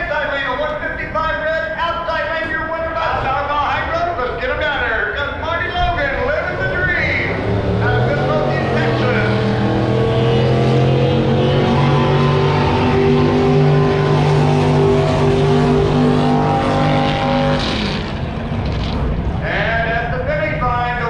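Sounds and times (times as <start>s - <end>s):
racing boat engine running: 5.2s - 19.8s.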